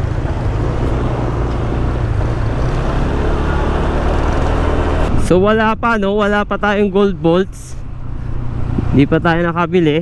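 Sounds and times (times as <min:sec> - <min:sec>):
scooter engine hum: 0:00.0 - 0:05.2
wind and road noise: 0:00.0 - 0:10.0.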